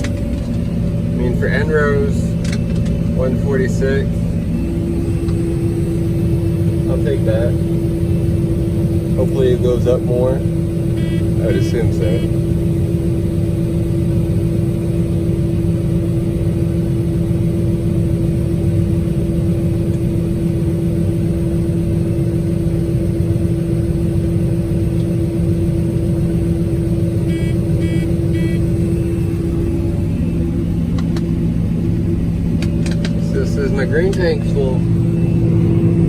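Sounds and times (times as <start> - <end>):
combine harvester droning: 0.0 - 36.0
short electronic beeps: 27.3 - 28.7.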